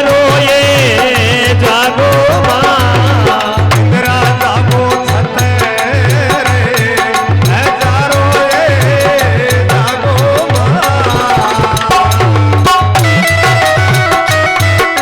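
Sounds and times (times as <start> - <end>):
driving drum beat: 0.0 - 15.0
ornamented melody line: 11.6 - 15.0.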